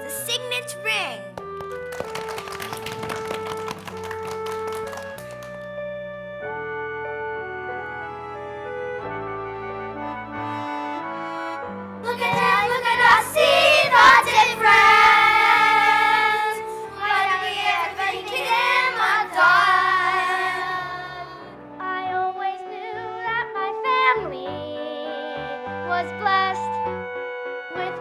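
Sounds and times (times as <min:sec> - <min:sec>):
instrumental accompaniment: 0:00.0 - 0:05.7, 0:09.6 - 0:21.2.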